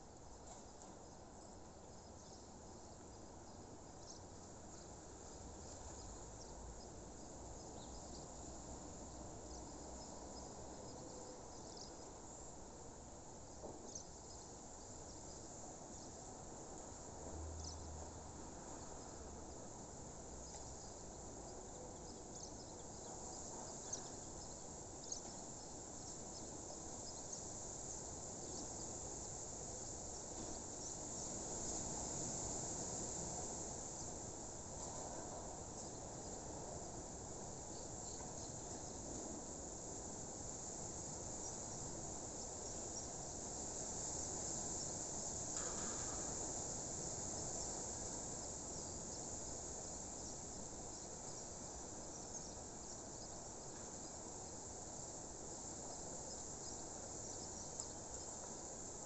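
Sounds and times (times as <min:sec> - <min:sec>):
crickets chirring: 0:01.0 - 0:59.0.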